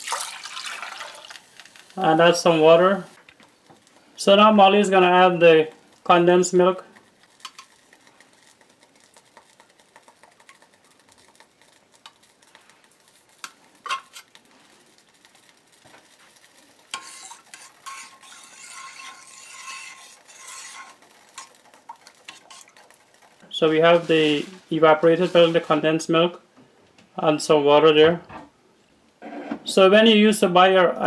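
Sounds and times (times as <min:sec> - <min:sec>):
spoon scraping and stirring: 0:05.7 - 0:25.8
metal spoon clinking on pot: 0:17.0 - 0:21.6.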